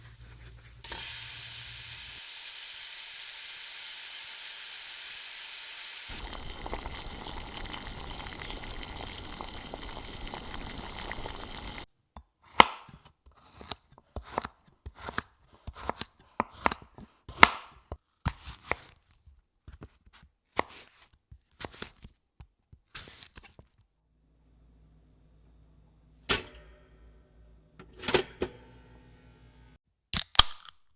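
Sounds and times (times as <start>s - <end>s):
food sizzling in a pan: 0.8s - 11.9s
knife chopping on cutting board: 12.5s - 19.0s.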